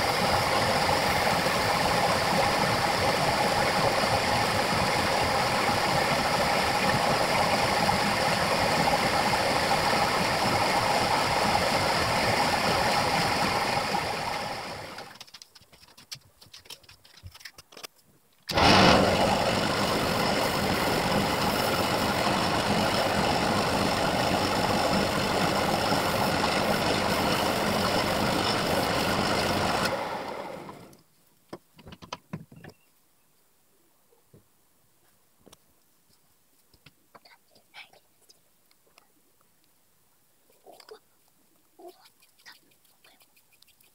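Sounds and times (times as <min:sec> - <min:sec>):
motor starting with loud jolt: 0:00.0 - 0:15.2, 0:18.5 - 0:31.0
power tool motor humming: 0:18.5 - 0:30.9.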